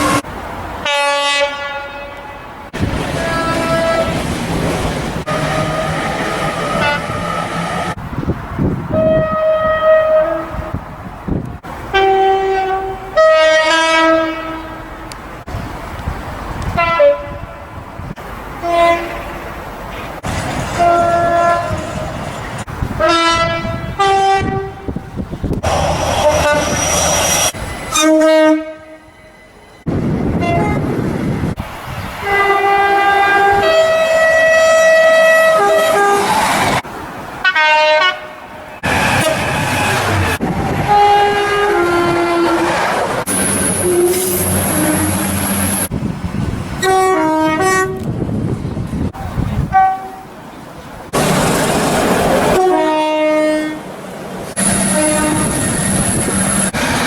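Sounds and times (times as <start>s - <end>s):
train rumble: 0.0s - 57.0s
locomotive horn blasts: 0.8s - 4.2s, 5.3s - 7.4s, 8.9s - 10.8s, 11.9s - 15.2s, 16.6s - 17.8s, 18.6s - 19.4s, 20.8s - 22.0s, 23.0s - 25.1s, 26.2s - 29.1s, 30.4s - 30.9s, 32.2s - 36.4s, 37.4s - 40.1s, 40.8s - 42.7s, 43.8s - 45.9s, 46.8s - 48.1s, 49.6s - 50.3s, 52.5s - 53.8s, 54.6s - 56.0s.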